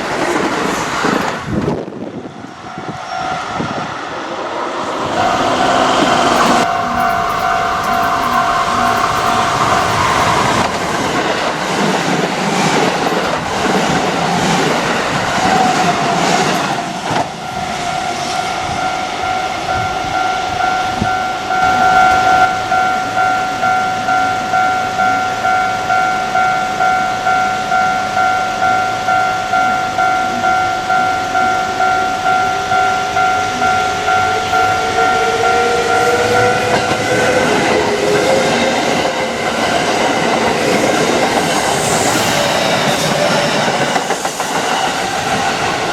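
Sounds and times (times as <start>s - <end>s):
train motor whine: 0.4s - 11.5s, 30.3s - 45.9s
train wheel clatter: 5.0s - 20.2s, 33.4s - 45.9s
level crossing alarm ringing: 5.2s - 11.6s, 17.2s - 42.5s.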